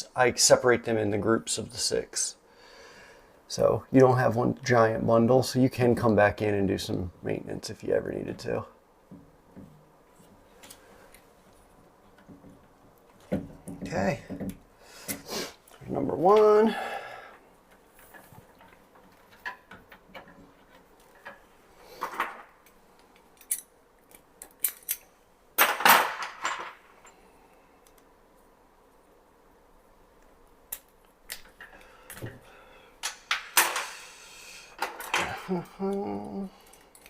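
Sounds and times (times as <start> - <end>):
clicks and snips of cable work: 10.6 - 13.8, 27.8 - 28.1, 30.2 - 32.4, 34.7 - 37.0
loud handling noises: 17.7 - 27.2, 33.0 - 35.6.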